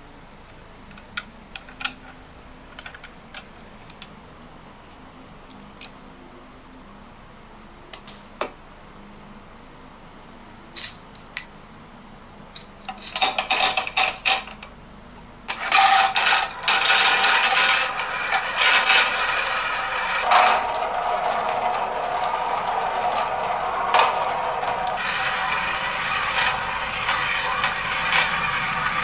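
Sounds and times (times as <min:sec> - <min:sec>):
marbles clattering down a track: 0:13.0 - 0:14.6, 0:15.5 - 0:29.0.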